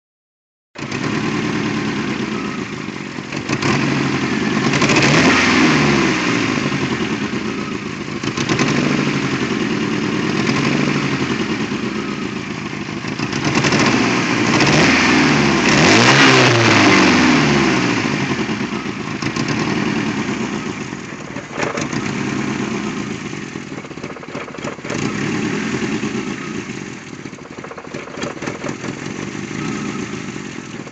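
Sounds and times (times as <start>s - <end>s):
car engine misfiring: 18.8s - 30.9s.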